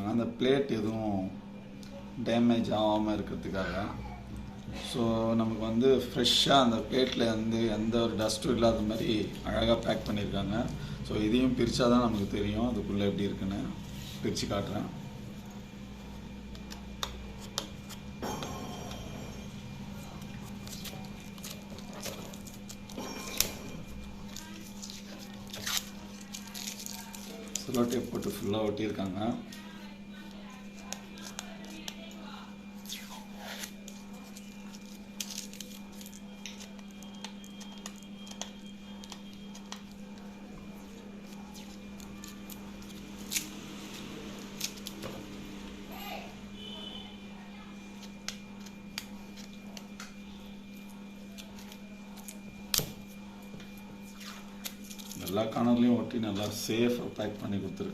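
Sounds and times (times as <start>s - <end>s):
steady low hum: 0.0s - 57.9s.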